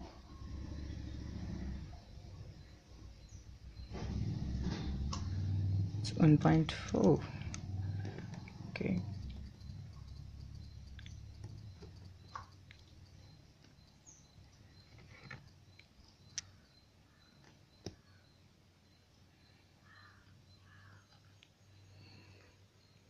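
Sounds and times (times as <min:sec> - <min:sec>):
low hum: 0:00.0 - 0:14.9
faint clicks and taps: 0:06.8 - 0:16.5.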